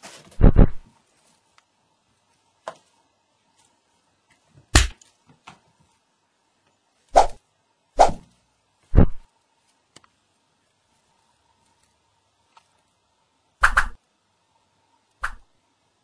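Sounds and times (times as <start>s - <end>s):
cartoon punch hits: 4.8s - 5.0s.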